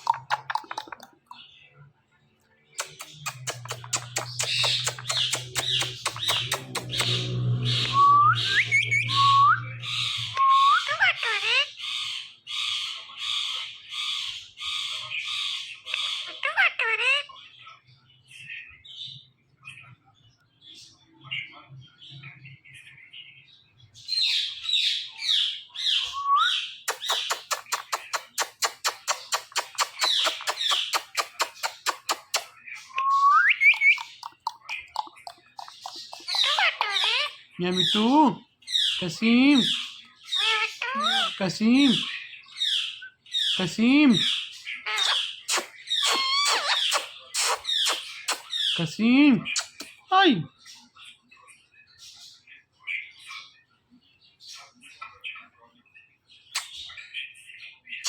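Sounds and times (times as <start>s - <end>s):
parrot chattering and clicking: 0.0s - 1.4s, 2.8s - 7.3s, 26.9s - 38.1s, 43.6s - 48.8s, 49.5s - 50.0s, 56.6s - 56.8s
low hum: 6.1s - 10.6s
parrot whistling rising notes: 6.3s - 10.9s.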